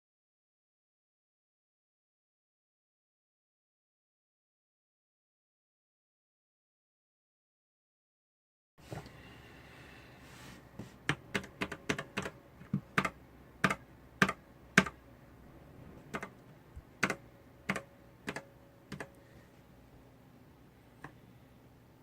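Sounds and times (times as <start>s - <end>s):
mechanical keyboard keystrokes: 11.1s - 15.0s, 16.1s - 16.4s, 17.0s - 19.2s.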